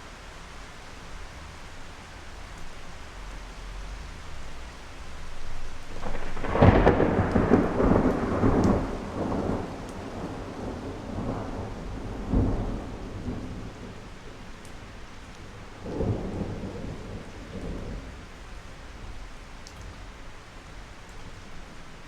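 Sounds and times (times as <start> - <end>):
steady rain: 0.0 - 22.0
thunder rolling: 5.2 - 14.5, 15.6 - 18.2.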